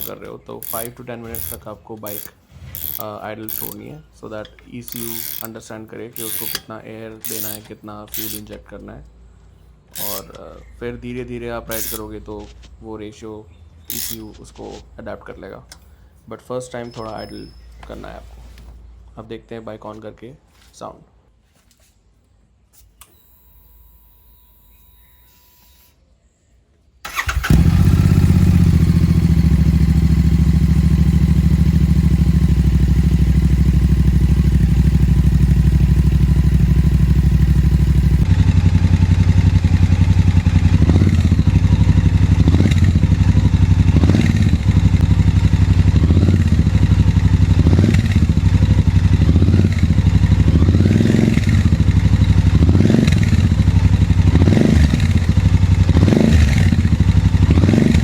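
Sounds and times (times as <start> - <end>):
motorcycle engine idling and revving: 0.0 - 5.6, 7.2 - 8.6, 9.2 - 12.8, 27.1 - 58.0.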